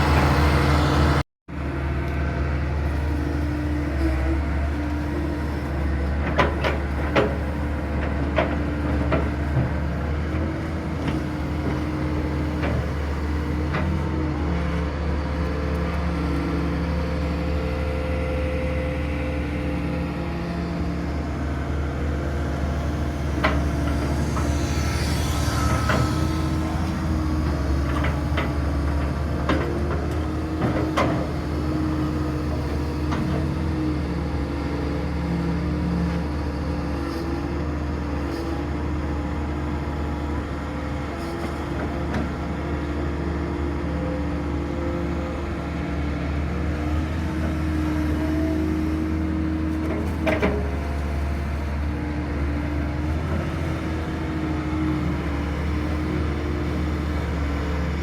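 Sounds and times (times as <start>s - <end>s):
excavator diesel engine: 0.0s - 58.0s
hydraulic tone shifting pitch: 23.6s - 27.3s.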